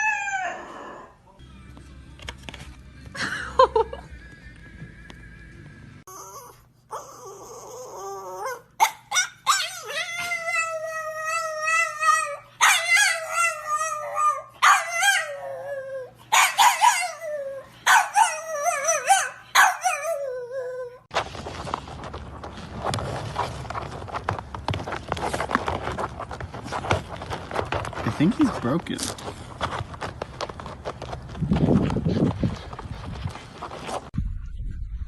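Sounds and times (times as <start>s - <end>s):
dog howling and yipping: 0.0s - 1.2s, 6.1s - 21.1s.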